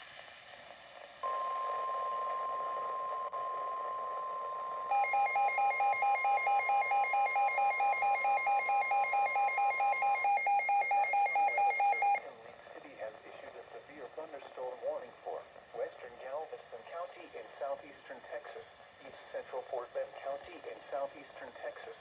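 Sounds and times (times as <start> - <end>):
rapid electronic beeping: 4.9 - 12.2
steady alert tone: 4.9 - 12.2.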